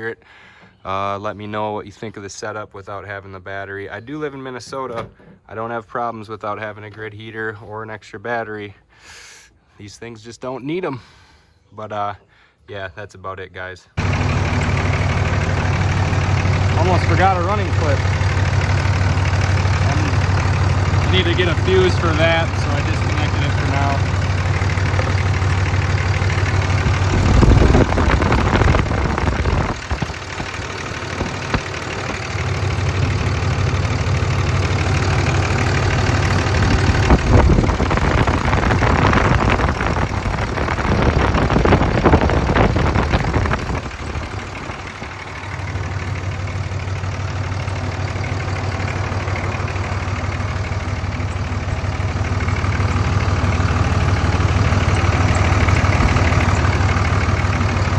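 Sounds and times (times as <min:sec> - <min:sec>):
diesel engine idling: 0:14.0 - 0:57.9
loud rough noise: 0:14.0 - 0:57.9.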